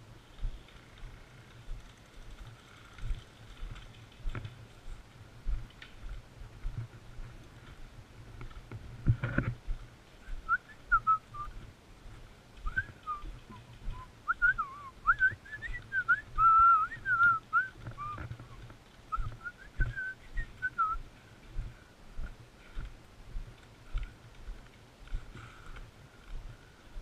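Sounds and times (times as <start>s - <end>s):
person whistling a tune: 10.4s - 11.5s, 12.7s - 18.2s, 19.1s - 21.0s.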